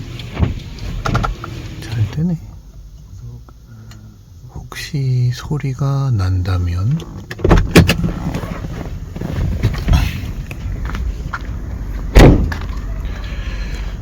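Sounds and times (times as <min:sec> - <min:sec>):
knocks on a car: 0:12.1 - 0:12.6.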